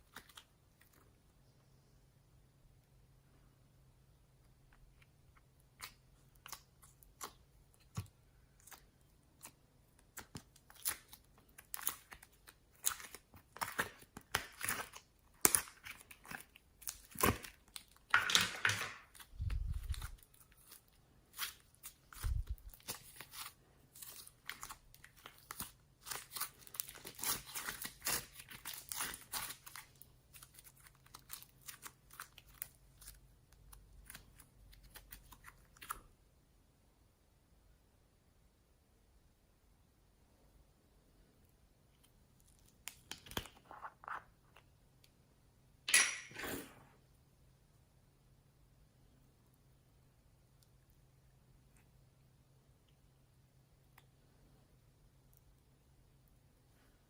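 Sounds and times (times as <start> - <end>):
crinkly material crackling: 6.3 - 36.0.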